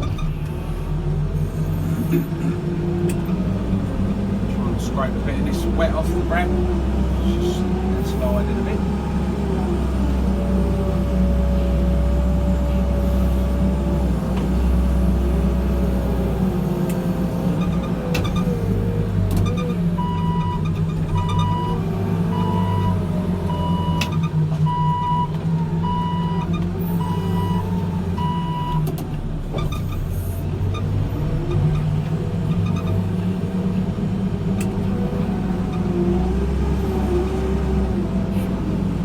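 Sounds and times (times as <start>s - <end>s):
diesel engine working under load: 0.0s - 39.0s
reversing alarm beeping: 20.0s - 28.8s.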